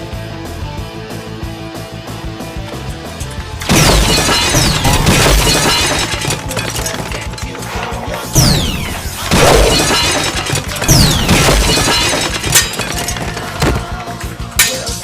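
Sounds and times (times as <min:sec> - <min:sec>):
background music: 0:00.0 - 0:15.0
sharp hits: 0:03.6 - 0:07.3, 0:08.4 - 0:13.8
crash: 0:03.6 - 0:14.0.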